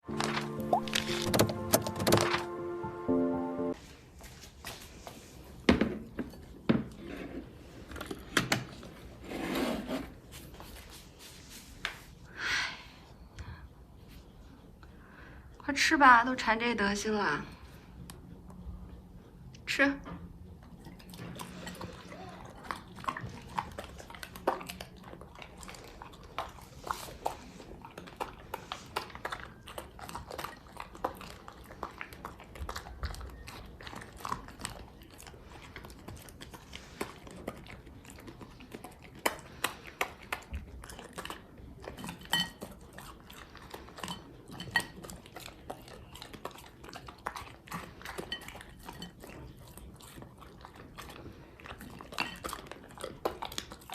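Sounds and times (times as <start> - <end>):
dog chewing: 20.5 - 53.9.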